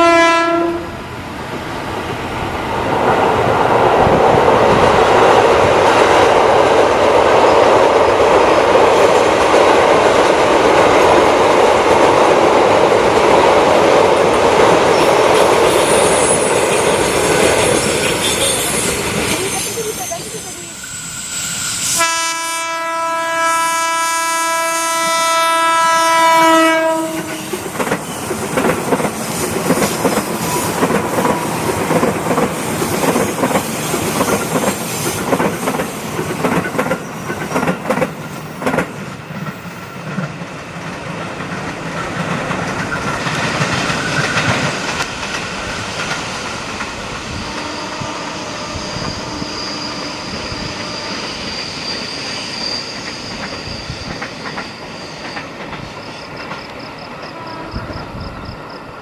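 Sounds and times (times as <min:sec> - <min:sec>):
train horn blast: 0:00.0 - 0:01.0, 0:21.9 - 0:27.6, 0:47.3 - 0:51.3, 0:57.3 - 0:58.1
train wheels clattering over rail joints: 0:27.5 - 0:47.7, 0:53.0 - 0:57.3.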